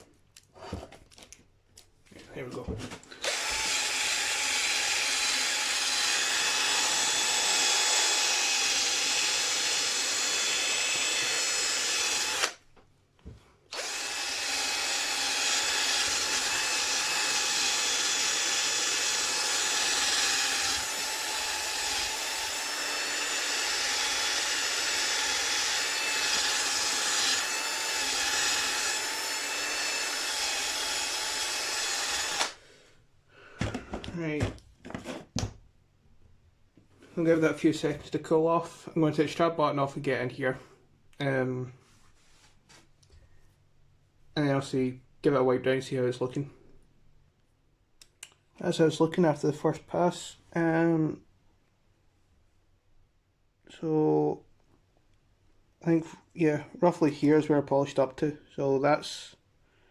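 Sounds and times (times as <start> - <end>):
power tool polisher whining: 3.2 - 12.6, 13.7 - 32.6.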